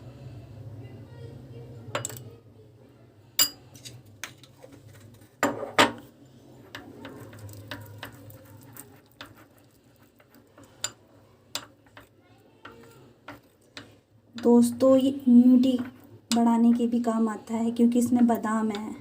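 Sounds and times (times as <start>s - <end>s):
spoon scraping a bowl: 6.4s - 14.0s, 15.6s - 16.5s.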